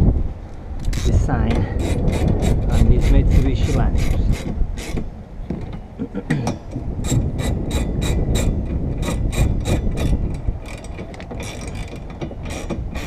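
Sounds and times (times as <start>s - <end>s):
hand ratchet clicking: 1.8s - 5.1s, 6.5s - 13.0s.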